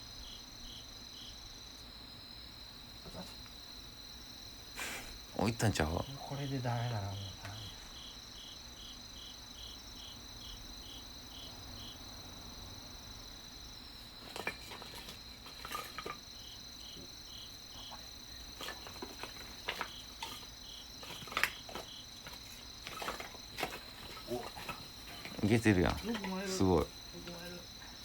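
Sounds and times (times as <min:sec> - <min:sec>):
insects trilling: 0:00.0 - 0:28.0
pulsing insect chirp: 0:00.0 - 0:28.0
kindling crackling in fire: 0:11.9 - 0:28.0.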